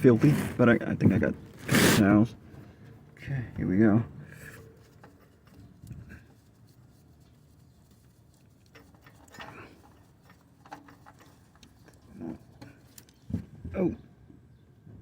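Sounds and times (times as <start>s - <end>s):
short scrape or grunt: 1.6s - 2.1s
handling clicks and rustling: 4.5s - 13.5s.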